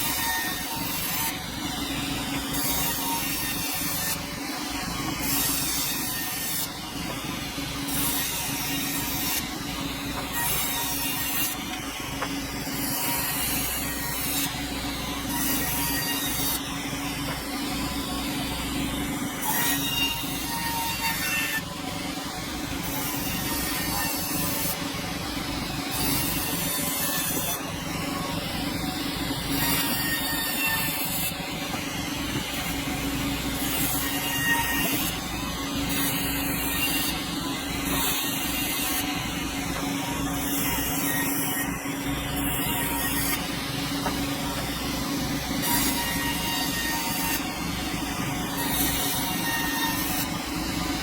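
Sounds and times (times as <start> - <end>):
sawmill blade cutting log: 0.0 - 21.7, 22.5 - 24.8, 25.8 - 51.0.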